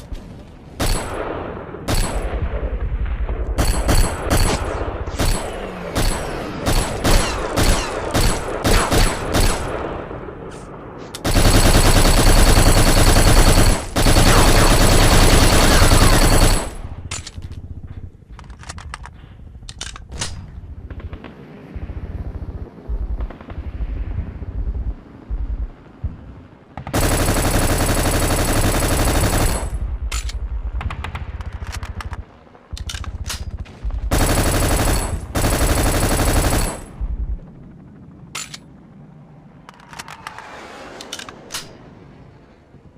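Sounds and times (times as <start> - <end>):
rifle rapid fire bursts: 1.9 - 2.4, 3.6 - 9.8, 11.2 - 16.9, 26.8 - 29.9, 34.1 - 37.0.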